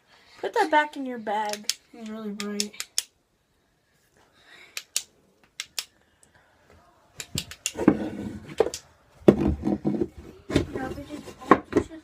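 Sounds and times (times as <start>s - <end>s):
voice: 0.4s - 2.8s, 10.3s - 12.0s
sharp clicks: 1.4s - 3.2s, 4.8s - 6.0s, 7.2s - 7.8s.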